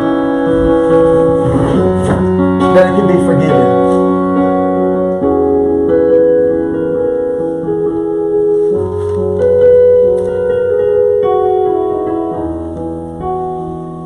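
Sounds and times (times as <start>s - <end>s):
keyboard playing slow chords: 0.0s - 14.0s.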